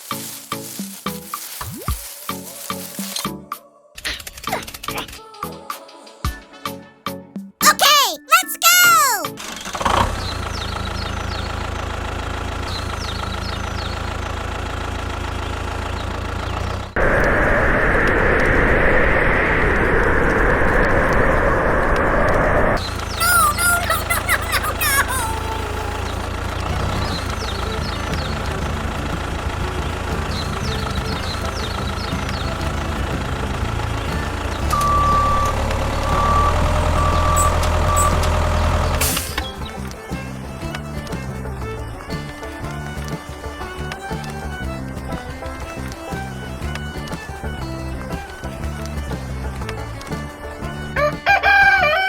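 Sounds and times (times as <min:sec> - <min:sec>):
engine-like idling hum: 0:09.7 - 0:17.7, 0:25.6 - 0:39.2.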